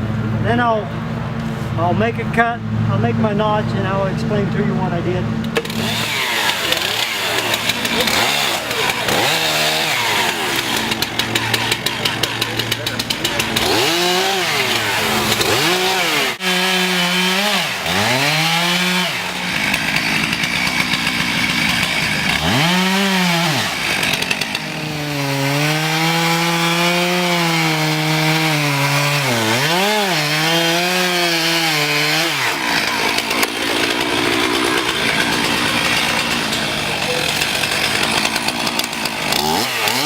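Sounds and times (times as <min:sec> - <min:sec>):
chainsaw cutting wood: 0:05.4 - 0:40.0.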